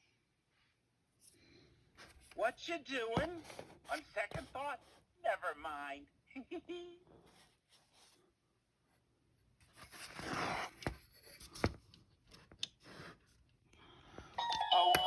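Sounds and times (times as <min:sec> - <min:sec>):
rustling and scraping handling noise: 0:01.2 - 0:02.4, 0:03.0 - 0:05.1, 0:09.6 - 0:13.4.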